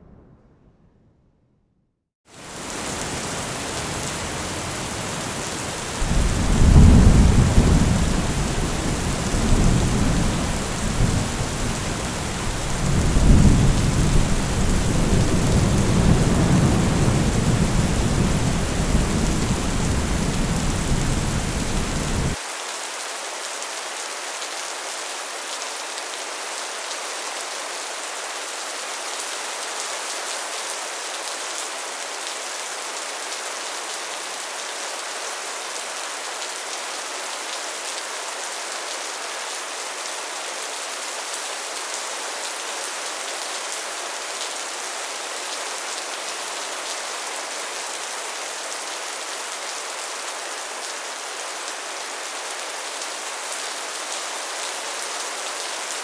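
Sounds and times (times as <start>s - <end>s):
low thunder rumbling: 0.0s - 1.8s, 6.0s - 22.4s
heavy rain on a metal roof: 2.3s - 56.0s.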